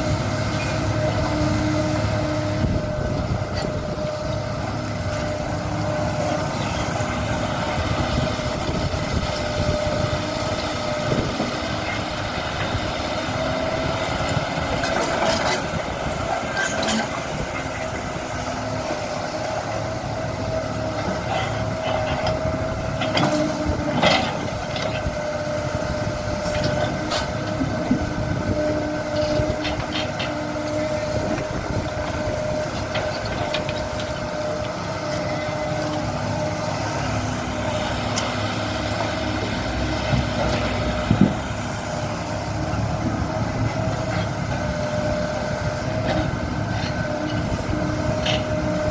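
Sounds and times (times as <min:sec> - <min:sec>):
excavator engine running: 0:00.0 - 0:48.9.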